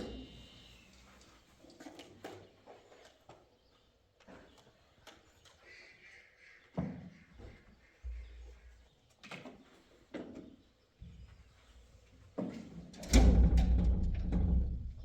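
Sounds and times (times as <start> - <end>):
knocks and thuds on wooden door: 13.1 - 15.0.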